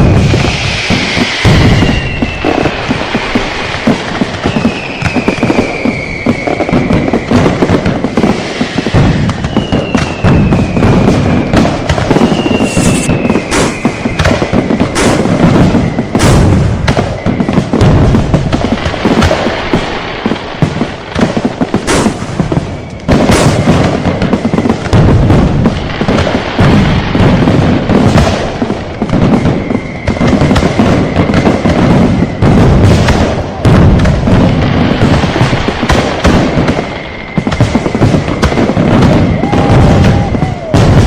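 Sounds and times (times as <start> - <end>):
fireworks crackling and booming: 0.0 - 41.0
whistling rockets: 0.0 - 41.0
sharp firecracker cracks: 11.8 - 31.9.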